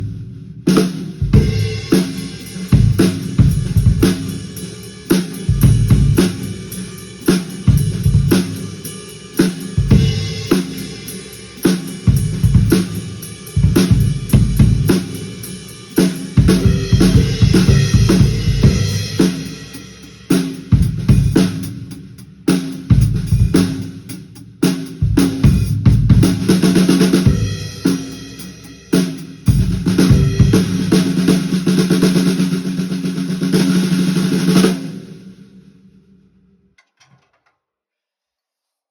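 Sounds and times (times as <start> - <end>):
drum kit slow groove: 0.0 - 35.6
cymbals ringing: 1.4 - 20.3.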